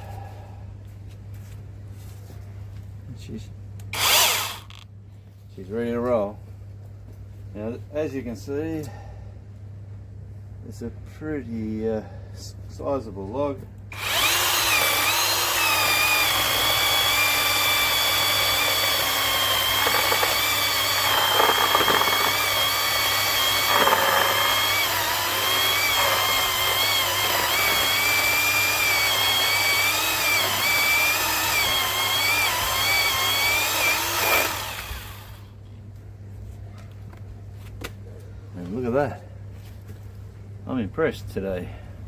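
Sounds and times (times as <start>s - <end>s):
electric chainsaw cutting log: 4.0s - 4.8s, 13.9s - 35.4s.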